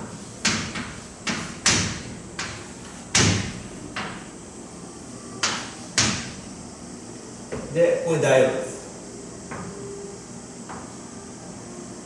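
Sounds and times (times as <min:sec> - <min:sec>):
writing strokes on a board: 0:00.4 - 0:03.0.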